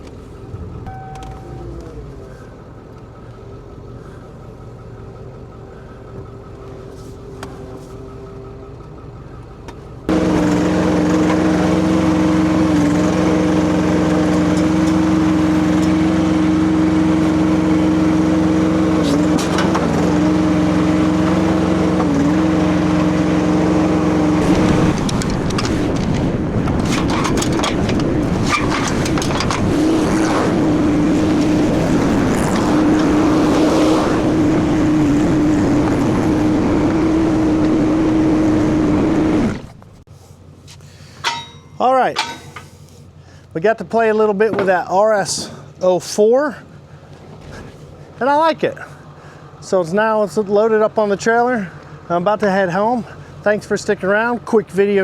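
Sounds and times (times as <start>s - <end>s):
diesel engine running hard: 0.0s - 41.4s, 42.4s - 44.2s, 45.1s - 55.0s
metal clanks: 24.4s - 30.2s, 41.1s - 42.8s.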